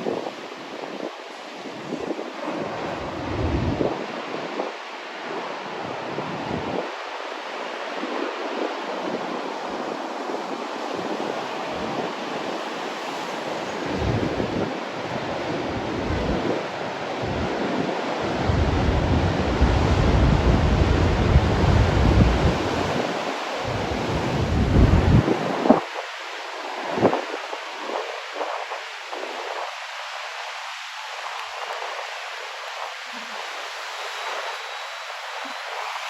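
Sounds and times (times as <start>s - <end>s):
wind buffeting microphone: 0.0s - 7.0s, 13.6s - 26.0s
ocean waves breaking: 0.0s - 28.5s.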